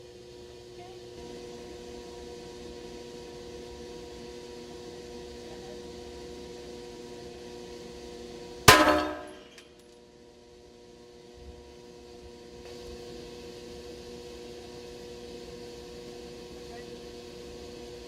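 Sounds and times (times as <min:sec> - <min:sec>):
steady hum with held tones: 0:00.0 - 0:18.0
sharp metallic bang: 0:08.7 - 0:09.5.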